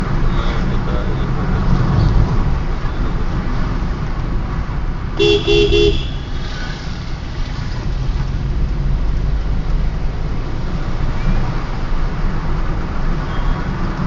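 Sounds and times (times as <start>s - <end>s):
road noise: 0.0s - 14.0s
vehicle engine rumble: 0.0s - 14.0s
vehicle horn beeping: 5.2s - 6.6s.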